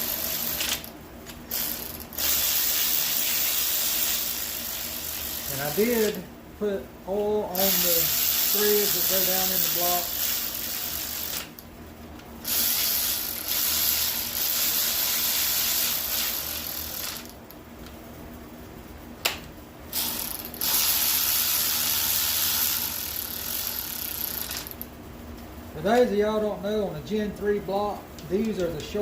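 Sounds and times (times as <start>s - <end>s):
ratchet wrench clicking: 0.0s - 6.2s, 7.6s - 11.6s, 12.4s - 17.5s, 20.0s - 24.9s.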